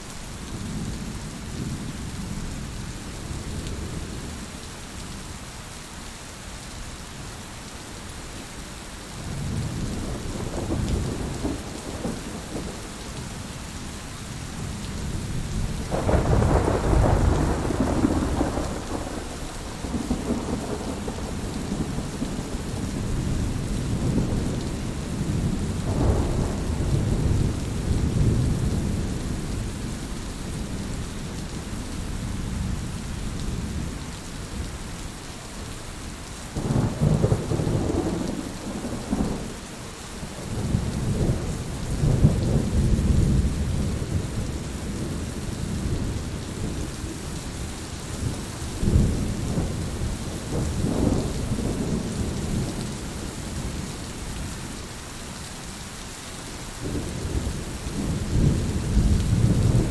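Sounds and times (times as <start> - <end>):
rain hissing: 0.0 - 59.9
thunder rumbling: 9.3 - 12.9, 15.0 - 30.8, 36.6 - 39.6, 48.2 - 54.0, 56.8 - 59.9.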